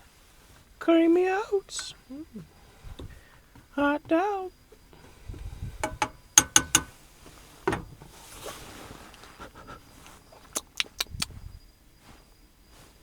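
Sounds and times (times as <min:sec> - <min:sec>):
spoon clinking against a pot: 0:05.8 - 0:07.0
spoon scraping a pot: 0:05.8 - 0:07.0.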